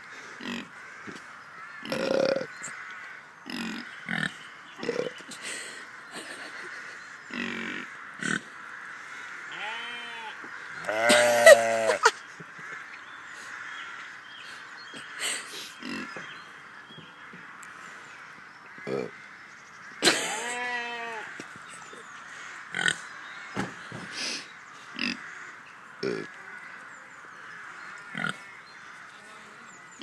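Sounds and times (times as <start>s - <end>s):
boars grunting: 1.7s - 2.8s, 3.4s - 5.4s, 7.3s - 8.8s, 21.2s - 23.1s, 24.9s - 26.5s.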